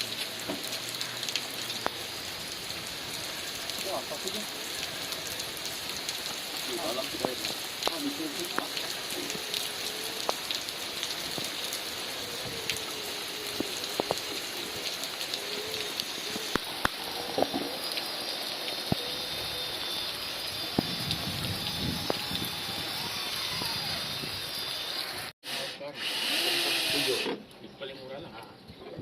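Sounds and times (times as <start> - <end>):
heavy rain hissing: 0.0 - 25.9
faint wavering whine: 15.5 - 25.3.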